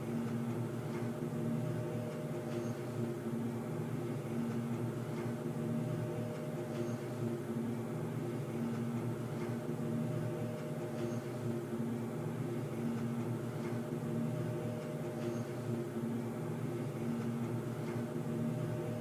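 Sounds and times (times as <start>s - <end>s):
low machine-like droning hum: 0.0s - 19.0s.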